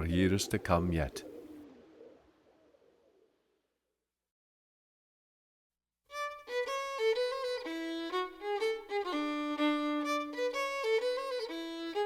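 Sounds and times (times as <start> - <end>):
violin playing a tune: 6.1 - 12.0.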